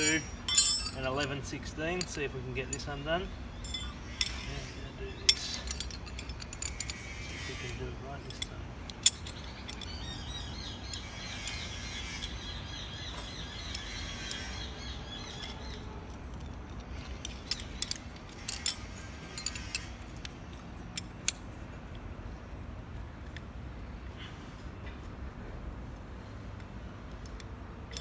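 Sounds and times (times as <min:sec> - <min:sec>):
spanners clicking on metal fitting: 0:00.0 - 0:10.0, 0:15.3 - 0:21.6
bird chirping: 0:09.2 - 0:15.9.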